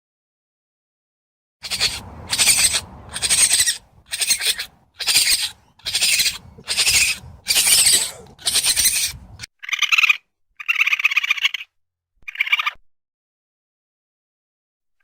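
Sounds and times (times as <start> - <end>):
raccoon buzzy trill: 1.6 - 9.5
raccoon hissing calls: 1.6 - 11.6.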